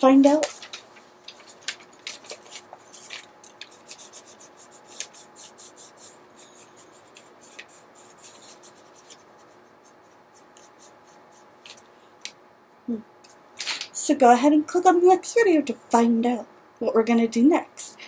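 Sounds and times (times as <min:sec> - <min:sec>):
pencil scratching on paper: 0:02.4 - 0:11.5.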